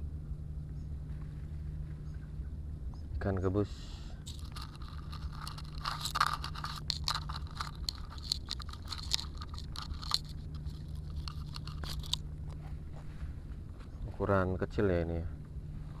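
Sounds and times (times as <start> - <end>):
steady low hum: 0.0 - 16.0
scraping crackling clicks: 4.3 - 12.6.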